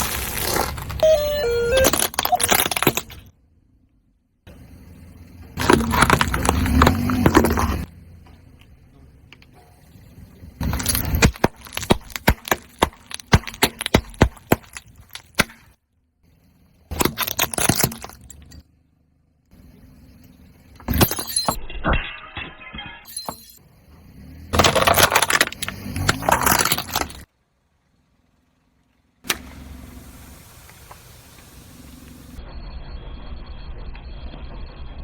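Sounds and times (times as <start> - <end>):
tyre crushing brittle objects: 0.0 - 1.0, 1.8 - 3.3, 5.6 - 7.9, 10.6 - 15.8, 16.9 - 18.6, 24.4 - 27.3.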